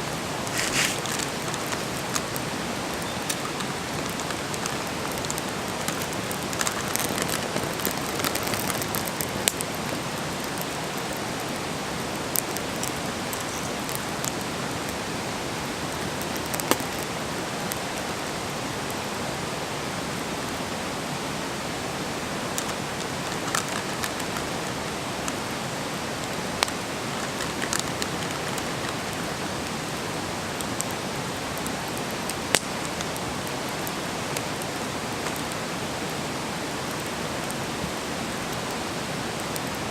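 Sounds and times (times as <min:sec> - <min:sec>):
wood fire hissing: 0:00.0 - 0:39.9
fire pops and crackles: 0:00.1 - 0:18.6, 0:22.4 - 0:39.9.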